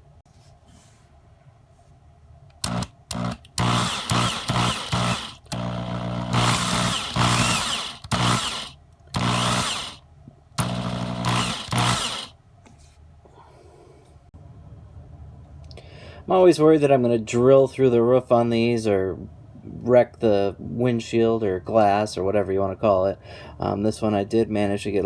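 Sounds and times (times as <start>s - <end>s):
electric drill in short bursts: 2.6s - 10.0s, 10.6s - 12.3s.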